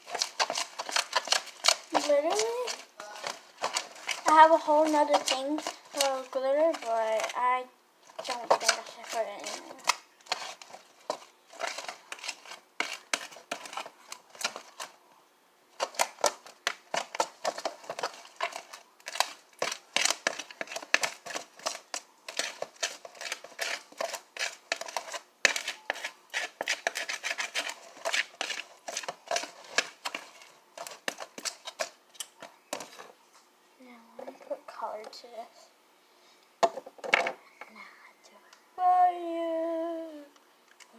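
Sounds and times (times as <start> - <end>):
glitter and glue being stirred: 0.0 - 15.0, 15.7 - 33.3.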